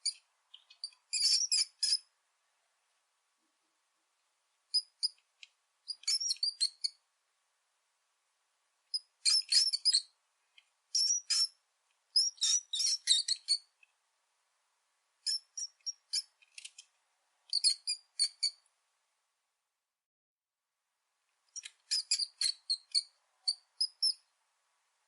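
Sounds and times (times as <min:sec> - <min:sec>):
rat squeaking: 0:00.0 - 0:02.1, 0:04.7 - 0:05.2, 0:05.9 - 0:07.0, 0:08.9 - 0:10.2, 0:10.9 - 0:13.7, 0:15.2 - 0:16.8, 0:17.5 - 0:18.6, 0:21.5 - 0:24.3.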